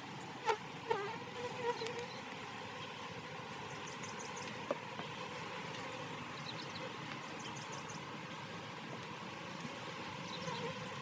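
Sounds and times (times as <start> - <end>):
honeybees humming: 0.0 - 11.0
bee buzzing past: 0.4 - 7.7, 9.6 - 11.0.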